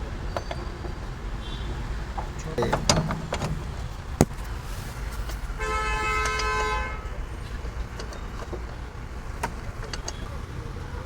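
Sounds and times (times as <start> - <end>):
sharp knock: 4.2 - 4.8
vehicle horn: 5.6 - 7.2.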